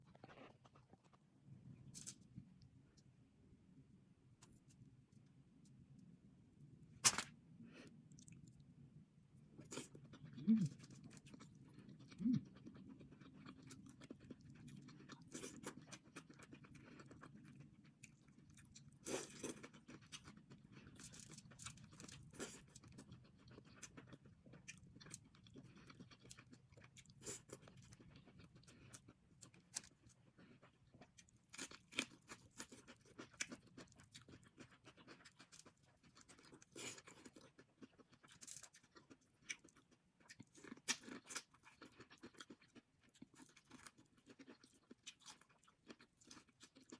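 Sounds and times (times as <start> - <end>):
wet chewing and crunching: 9.6 - 46.9.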